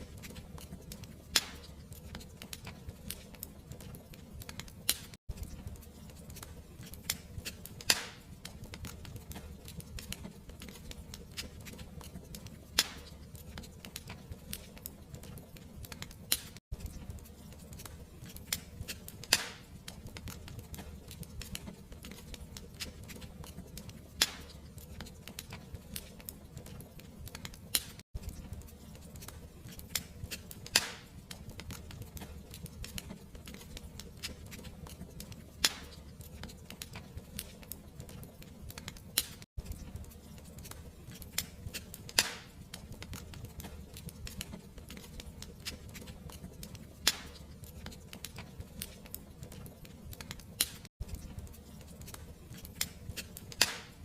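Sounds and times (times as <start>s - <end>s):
fire crackling and popping: 0.0s - 54.0s.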